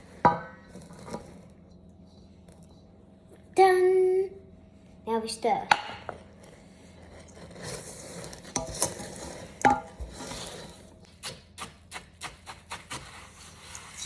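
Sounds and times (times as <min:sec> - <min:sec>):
spoon stirring dry mix in bowl: 0:06.2 - 0:14.0.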